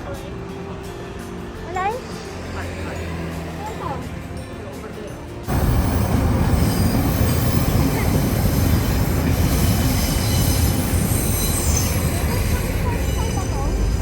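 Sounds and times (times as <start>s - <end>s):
train rumbling on rails: 5.5s - 14.0s
wheels squealing: 5.5s - 14.0s.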